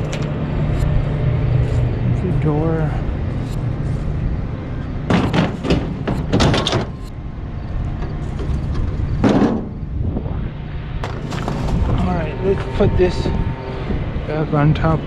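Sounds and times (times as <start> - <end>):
scrap metal bangs and clatters: 5.0 - 7.1, 8.0 - 9.8, 11.0 - 12.7.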